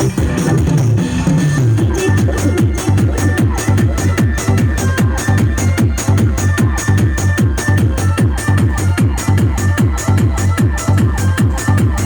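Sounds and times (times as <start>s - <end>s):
bass downward sweeps: 0.0s - 10.3s
electronic dance music: 0.0s - 12.0s.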